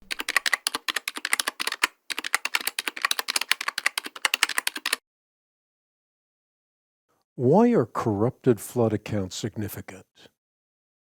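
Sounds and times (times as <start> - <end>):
rapid typing on a keyboard: 0.0 - 5.0.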